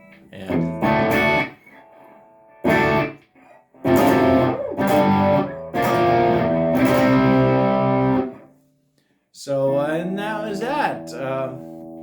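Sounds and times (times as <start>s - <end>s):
electric guitar chords strummed: 0.0s - 3.2s, 3.8s - 8.5s.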